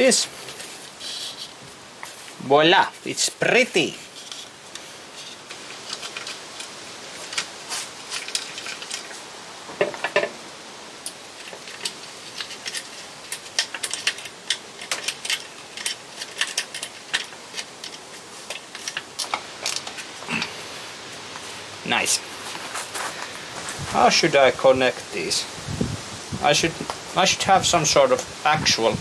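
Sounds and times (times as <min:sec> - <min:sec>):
small clicks of tools and parts: 0:11.0 - 0:20.5.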